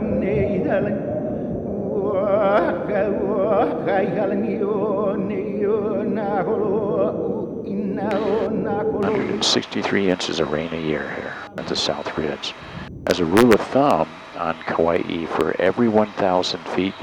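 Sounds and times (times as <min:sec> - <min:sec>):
operatic singing with music: 0:00.0 - 0:12.6.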